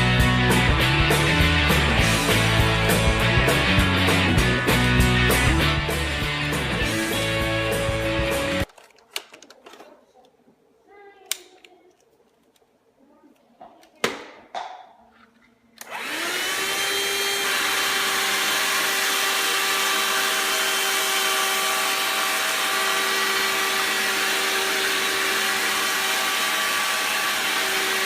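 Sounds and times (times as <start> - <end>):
vacuum cleaner motor running: 15.8 - 28.0.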